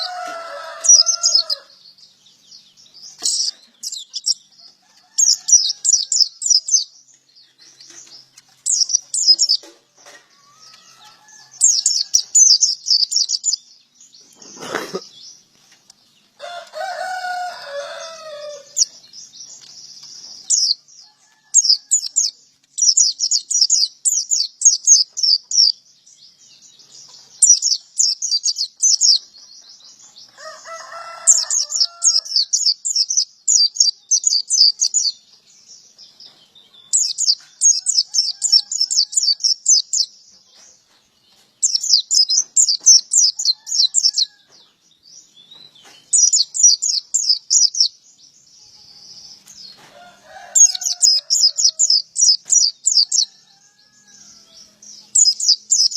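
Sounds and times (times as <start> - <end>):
lower-pitched bird call: 0.0 - 1.8
bird chattering song: 0.0 - 55.9.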